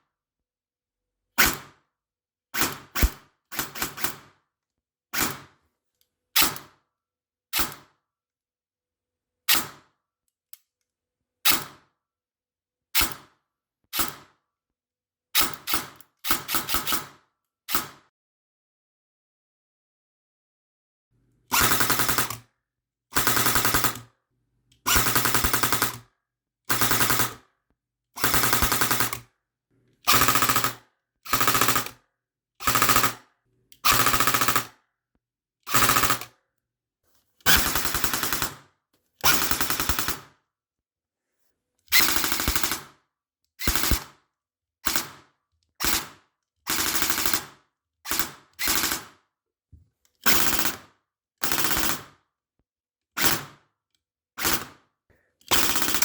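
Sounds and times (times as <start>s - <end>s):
airsoft gun firing bursts: 2.6s - 4.3s, 21.5s - 22.4s, 23.2s - 24.0s, 24.9s - 26.1s, 26.7s - 27.5s, 28.2s - 29.2s, 30.1s - 32.0s, 32.6s - 33.2s, 33.9s - 34.8s, 35.7s - 36.3s, 37.5s - 38.6s, 39.3s - 40.3s, 42.0s - 43.0s, 43.6s - 44.2s, 44.8s - 45.2s, 45.8s - 49.2s, 50.3s - 50.8s, 51.4s - 52.1s, 53.2s - 53.5s, 54.4s - 54.8s, 55.5s - 56.0s.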